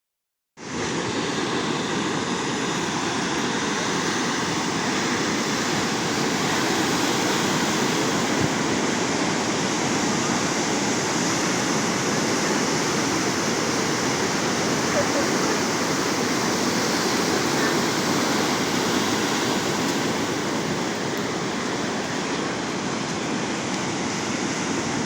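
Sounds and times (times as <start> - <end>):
ocean surf washing ashore: 0.6 - 25.0.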